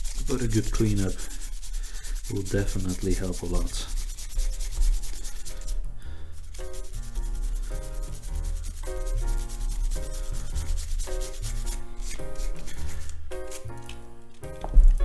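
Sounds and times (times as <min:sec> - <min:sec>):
scrubbing on camera body: 0:00.0 - 0:13.8
background music with bass line: 0:04.7 - 0:15.0.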